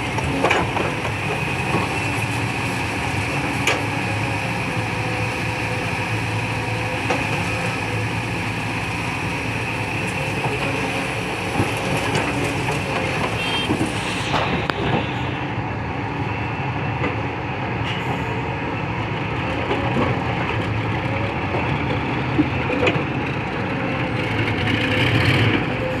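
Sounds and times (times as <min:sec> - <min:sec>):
excavator engine drone: 0:00.0 - 0:26.0.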